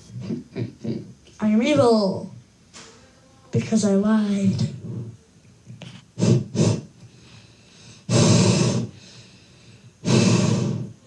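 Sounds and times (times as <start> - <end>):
boy snorting into microphone: 0.0 - 1.2, 4.6 - 7.1, 7.9 - 9.1, 10.0 - 11.0.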